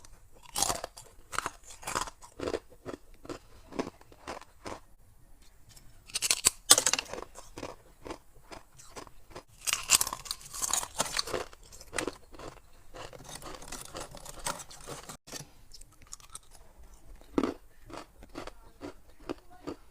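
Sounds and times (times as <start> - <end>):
ice cubes crunching: 0.0 - 4.8, 6.1 - 19.8
person chewing ice: 0.0 - 5.0, 6.1 - 19.9.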